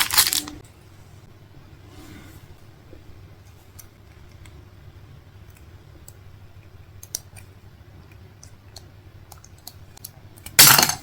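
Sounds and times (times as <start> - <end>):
low steady hum: 0.0 - 11.0
loud rustling scrape: 1.8 - 2.6.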